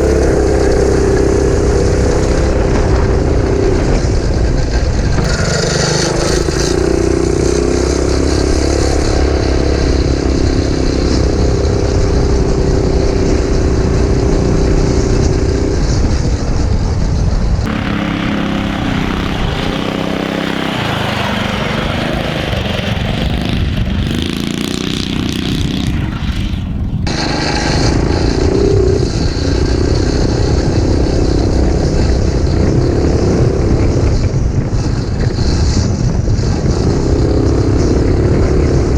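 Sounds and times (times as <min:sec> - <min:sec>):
mini bike engine revving: 0:00.0 - 0:15.6, 0:17.7 - 0:38.9.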